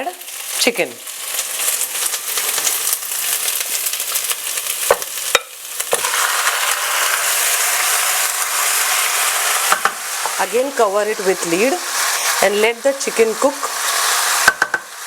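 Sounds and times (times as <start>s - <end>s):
food sizzling in hot oil: 0.0s - 15.0s
utensil knocking against pan: 14.5s - 14.9s.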